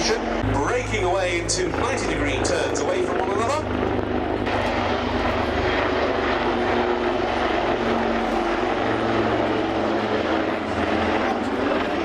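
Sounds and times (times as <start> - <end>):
constant tone: 0.0 - 12.0
helicopter rotor and turbine noise: 0.0 - 12.0.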